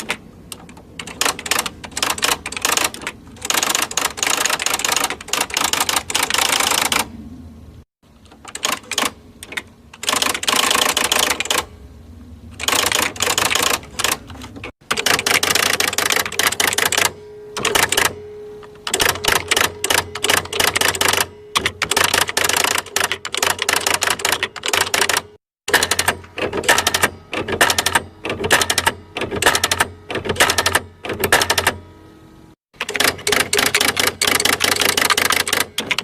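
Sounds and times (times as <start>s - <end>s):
electronic typewriter typing: 0.0s - 7.1s, 8.2s - 11.7s, 12.6s - 31.8s, 32.8s - 36.0s
faint steady hum: 0.0s - 25.4s, 26.2s - 32.6s.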